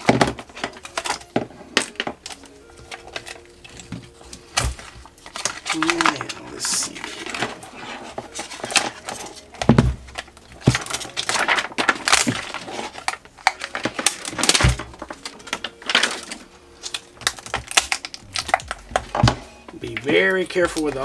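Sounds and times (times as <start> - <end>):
rustling and crinkling: 0.0 - 21.0.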